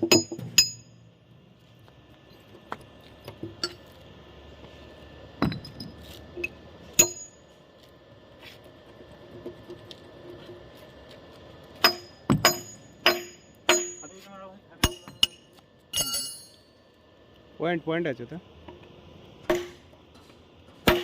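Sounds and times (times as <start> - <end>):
metal striking steel with ringing: 0.0 - 1.1, 7.0 - 7.4, 11.8 - 14.2, 14.8 - 16.7.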